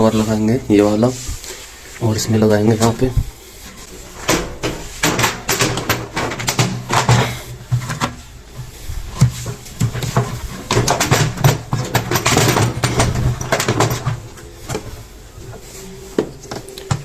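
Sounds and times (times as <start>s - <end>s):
panel knocks clicks and scrapes: 7.1s - 8.4s.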